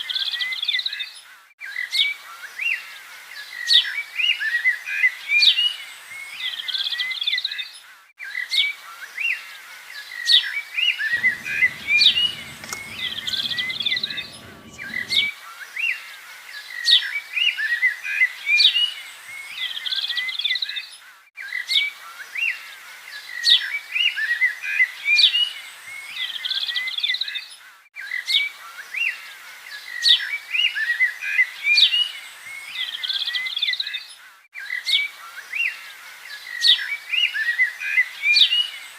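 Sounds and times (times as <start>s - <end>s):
small birds chirping and whistling: 11.2s - 15.3s.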